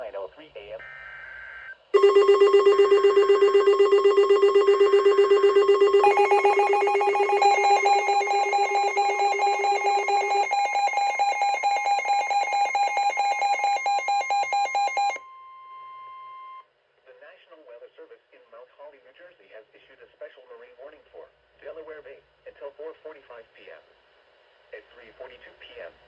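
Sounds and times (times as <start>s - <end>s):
rapidly pulsing alarm beeps: 2.0s - 15.2s
steady warning tone: 2.0s - 15.2s.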